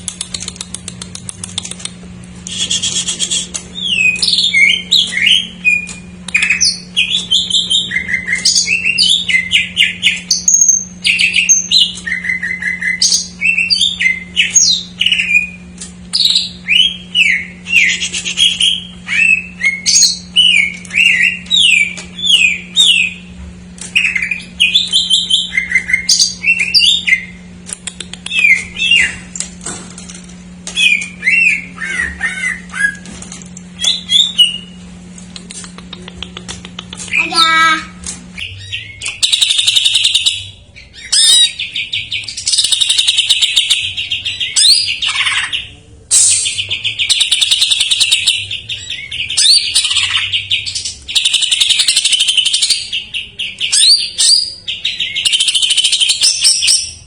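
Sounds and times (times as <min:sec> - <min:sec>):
bird singing whistles and trills: 0:03.7 - 0:23.3, 0:24.0 - 0:27.4, 0:30.8 - 0:33.0, 0:38.4 - 0:57.0.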